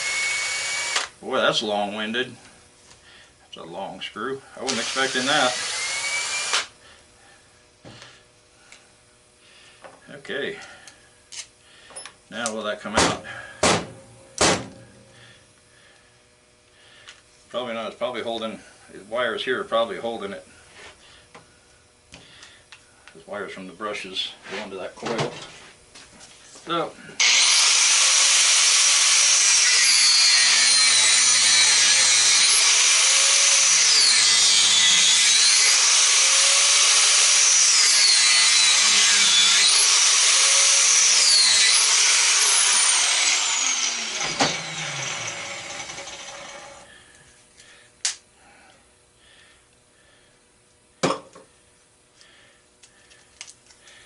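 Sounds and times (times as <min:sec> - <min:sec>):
high-speed power tool cutting: 0:00.0 - 0:01.1, 0:04.7 - 0:06.7, 0:27.2 - 0:46.9
sharp knocks: 0:13.0 - 0:14.7.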